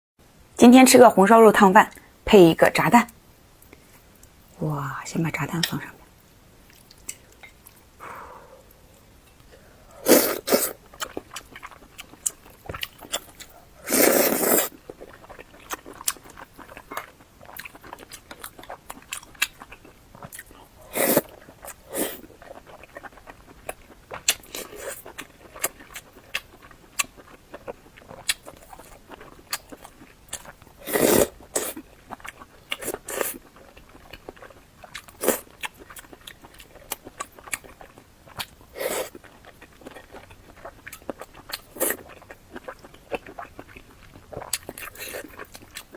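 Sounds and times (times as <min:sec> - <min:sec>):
close chewing and biting: 0:10.2 - 0:45.9.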